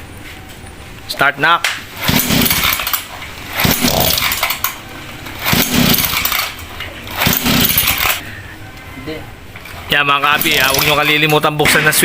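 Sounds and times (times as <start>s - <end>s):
scooter engine cranking: 2.0s - 8.2s, 9.6s - 11.3s.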